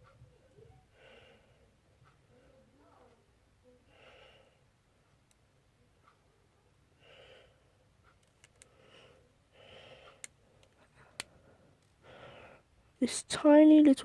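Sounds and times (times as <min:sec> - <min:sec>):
faint breathing: 0:00.6 - 0:03.0, 0:03.7 - 0:04.8, 0:07.0 - 0:12.8
small sharp clicks: 0:08.1 - 0:08.8.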